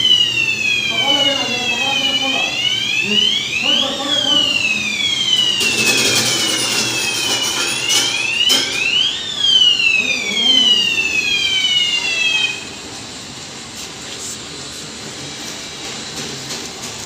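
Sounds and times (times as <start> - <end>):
siren-like wailing tone: 0.0 - 12.9
noisy clattering: 5.4 - 9.1.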